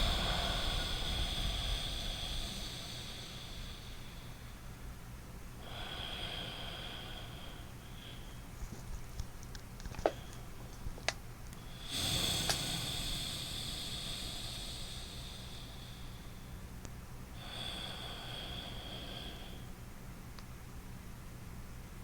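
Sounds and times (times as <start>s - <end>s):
man breathing through nose: 0.0s - 8.6s, 11.6s - 19.8s.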